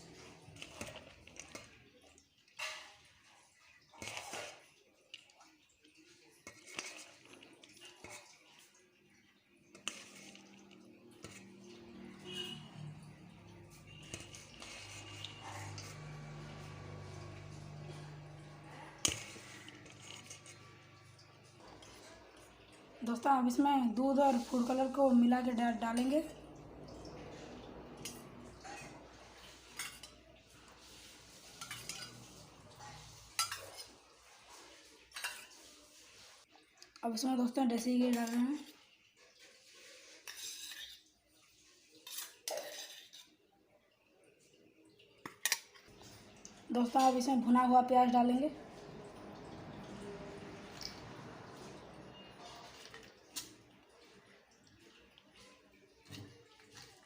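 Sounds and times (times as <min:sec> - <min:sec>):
metal spoon clinking on utensils: 0:09.7 - 0:22.7, 0:28.0 - 0:34.1, 0:35.1 - 0:35.7, 0:40.2 - 0:41.1, 0:42.0 - 0:43.4.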